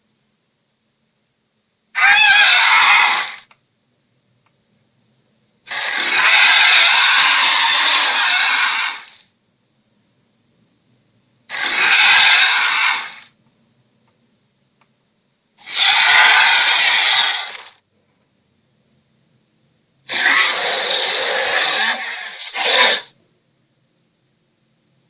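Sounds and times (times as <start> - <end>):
faint high whine: 0.0 - 25.0
harsh noisy toy sound effects: 2.0 - 3.5, 5.7 - 9.3, 11.5 - 13.4, 15.6 - 17.8, 20.1 - 23.2.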